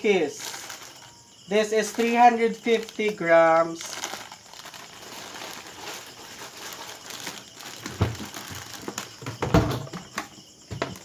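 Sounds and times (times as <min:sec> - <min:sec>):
snack packaging rustling: 0:00.3 - 0:01.2, 0:01.8 - 0:09.4.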